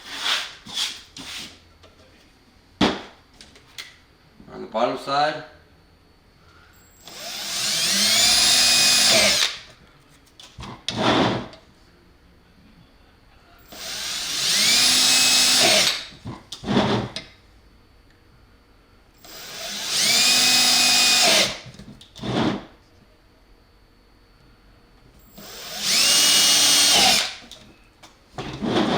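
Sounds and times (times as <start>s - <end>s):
power drill whining: 6.9s - 9.6s, 13.7s - 16.1s, 19.2s - 21.6s, 25.2s - 27.5s.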